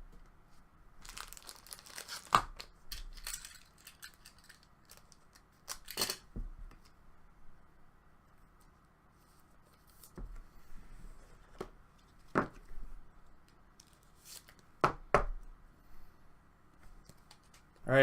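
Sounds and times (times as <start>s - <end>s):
card handling noise: 1.0s - 7.0s.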